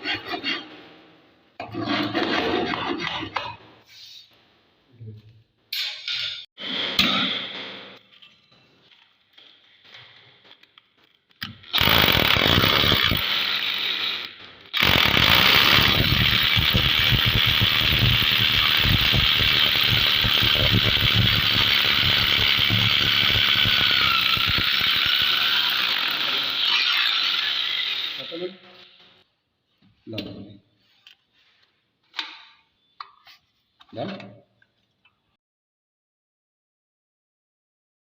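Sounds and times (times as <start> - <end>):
power tool rattling: 11.7 - 28.4.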